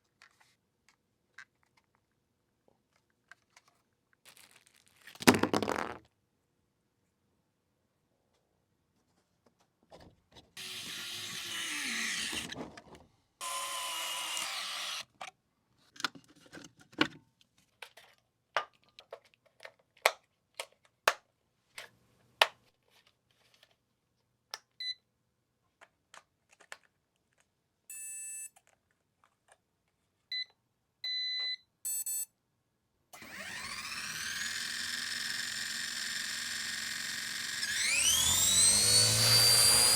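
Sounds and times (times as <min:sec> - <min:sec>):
small electric motor whining: 0:10.6 - 0:12.6, 0:13.4 - 0:15.0, 0:33.2 - 0:39.9
short electronic beeps: 0:27.9 - 0:28.5, 0:31.1 - 0:32.3.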